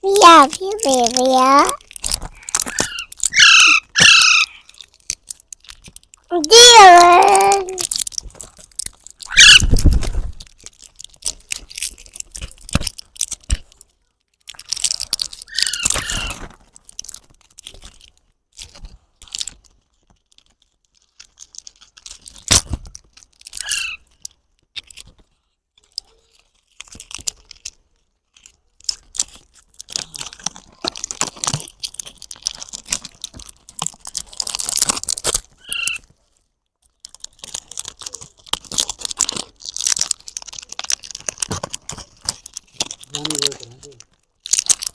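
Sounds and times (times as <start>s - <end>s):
crunching and rustling: 0.0s - 44.9s
baby parrot chirping: 2.7s - 4.6s, 9.3s - 9.7s, 15.5s - 16.4s, 35.6s - 36.0s.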